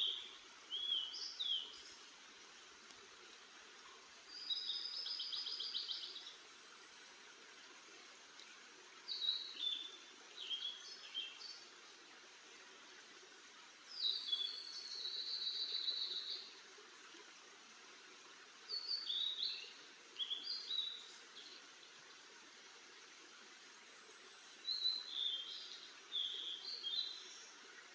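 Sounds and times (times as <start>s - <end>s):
bird singing: 0.0s - 2.0s, 9.1s - 11.6s, 18.7s - 21.6s, 24.6s - 27.4s
outdoor background hiss: 0.0s - 27.9s.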